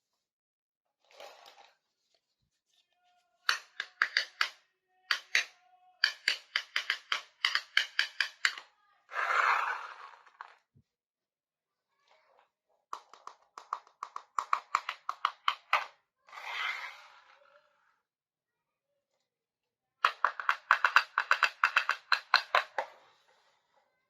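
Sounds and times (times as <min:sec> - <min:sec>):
toy pieces clicking and tapping: 0:03.4 - 0:08.6, 0:13.0 - 0:15.9, 0:20.0 - 0:22.9.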